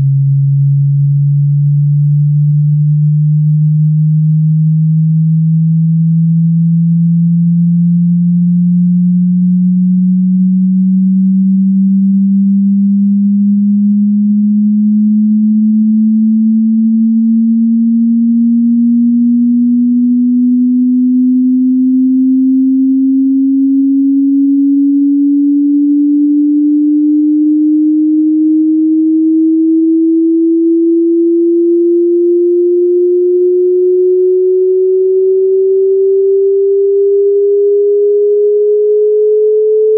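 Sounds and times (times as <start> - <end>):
rising sine-wave test tone: 0.0 - 39.9.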